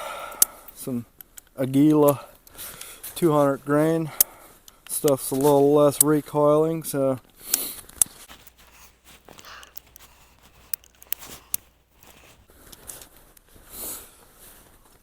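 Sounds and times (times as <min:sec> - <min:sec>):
light rustling: 0:07.9 - 0:13.1.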